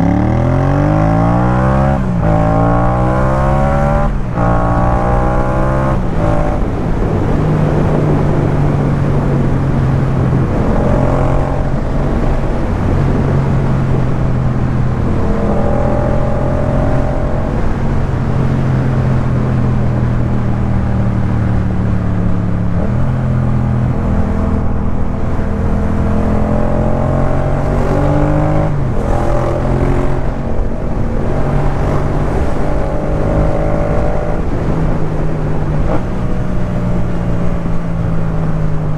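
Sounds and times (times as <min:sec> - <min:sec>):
motorcycle engine revving: 0:00.0 - 0:20.1, 0:21.0 - 0:36.2.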